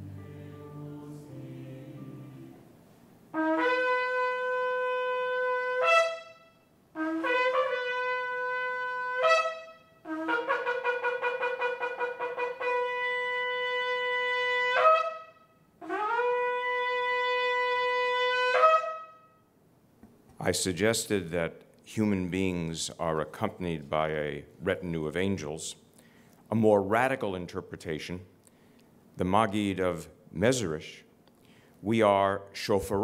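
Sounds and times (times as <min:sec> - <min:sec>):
ram's horn blasts: 0:03.3 - 0:19.2.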